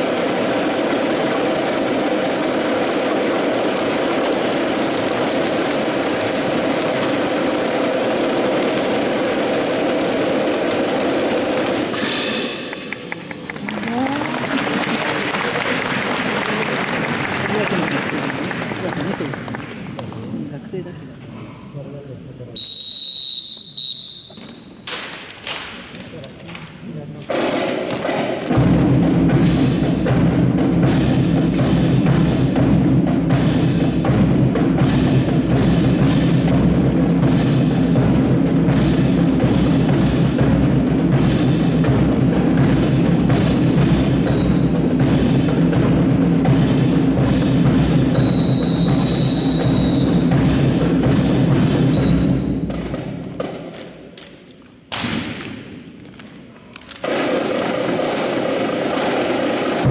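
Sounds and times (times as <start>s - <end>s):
music with heavy percussion: 0.0s - 13.0s, 27.3s - 53.8s, 57.0s - 59.9s.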